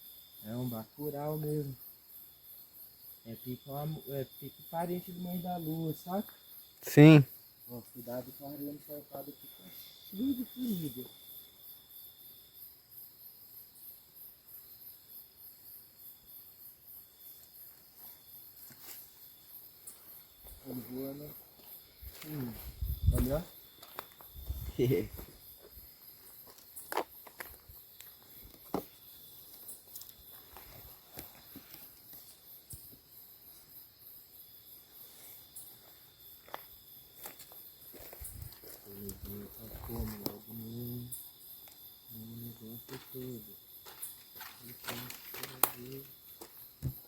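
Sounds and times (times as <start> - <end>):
high-pitched insect droning: 0.0 - 47.0
insects pulsing trill: 0.0 - 47.0.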